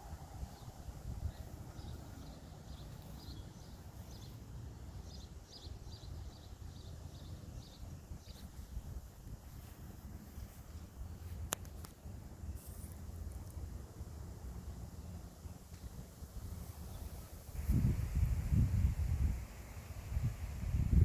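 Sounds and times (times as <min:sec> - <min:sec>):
steady low rumble: 0:00.0 - 0:06.4
small birds chirping: 0:00.1 - 0:13.6.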